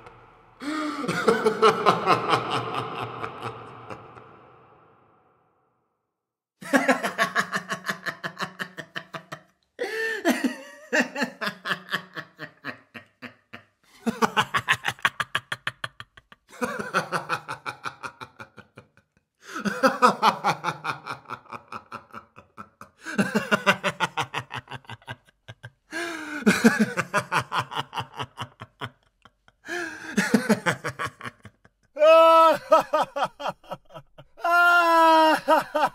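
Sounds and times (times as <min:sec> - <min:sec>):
man laughing: 0:00.6 - 0:04.9, 0:06.6 - 0:35.9.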